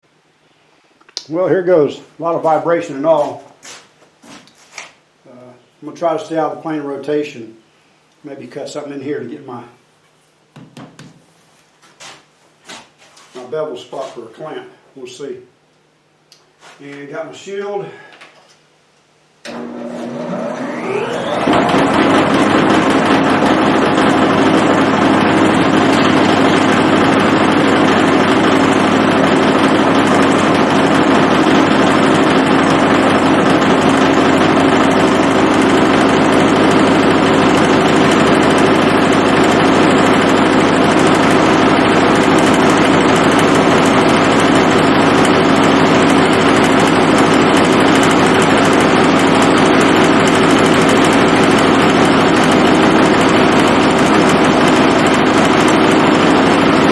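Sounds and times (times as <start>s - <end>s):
wood lathe motor humming: 19.5s - 56.9s.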